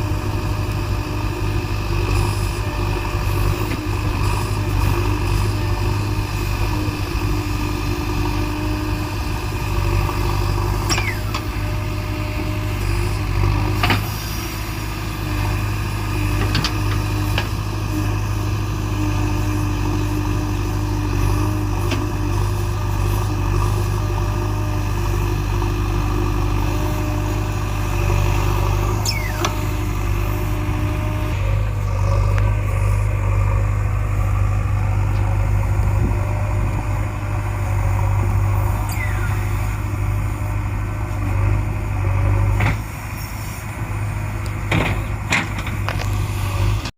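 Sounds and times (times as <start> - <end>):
diesel engine running: 0.0 - 46.9
hydraulic whining: 10.4 - 18.0, 26.0 - 46.9
sharp squeaks and clanks: 10.8 - 11.4, 29.0 - 29.6, 38.8 - 39.6.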